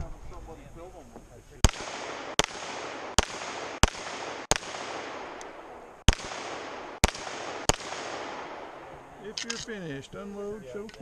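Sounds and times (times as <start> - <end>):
handgun shots echoing: 1.6 - 9.7.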